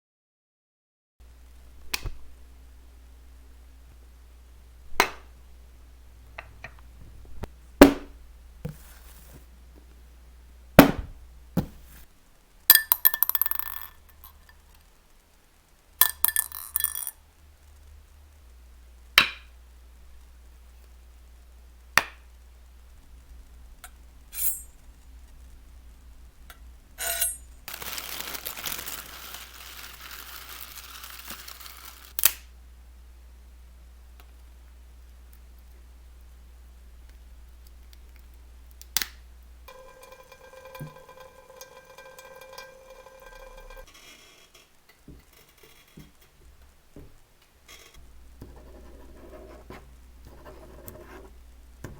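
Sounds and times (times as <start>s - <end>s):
sharp knocks: 10.8s - 11.8s
steady hiss: 14.0s - 16.1s, 17.1s - 39.9s.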